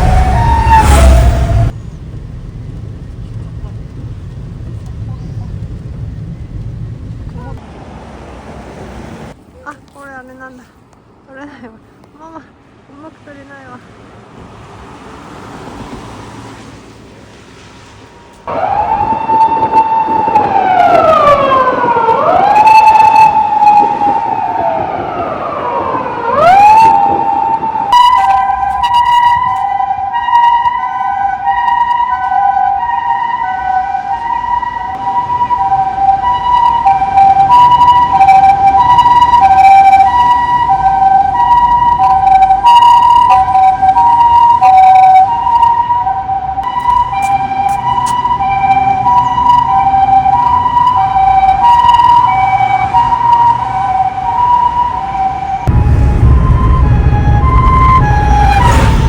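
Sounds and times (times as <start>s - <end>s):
siren wailing: 0.0s - 1.8s, 18.5s - 59.0s
two-tone hi-lo siren: 0.0s - 1.8s, 18.5s - 59.0s.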